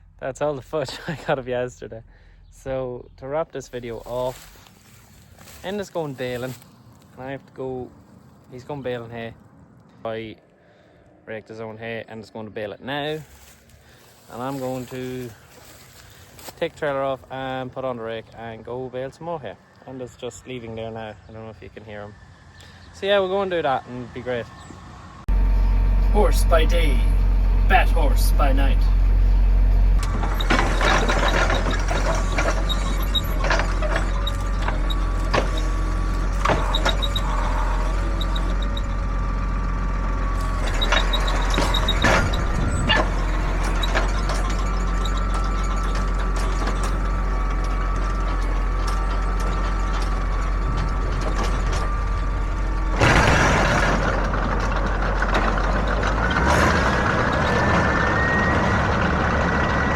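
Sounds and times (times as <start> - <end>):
tractor engine running: 3.6 - 7.1, 25.3 - 59.9
clanks and knocks: 30.0 - 37.1, 40.5 - 52.3, 52.9 - 57.8.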